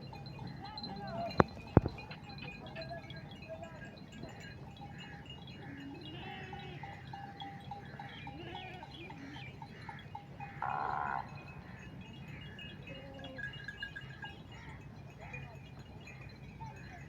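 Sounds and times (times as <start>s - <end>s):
light tinkling: 0.0s - 17.0s
goat or sheep bleating: 5.6s - 9.8s.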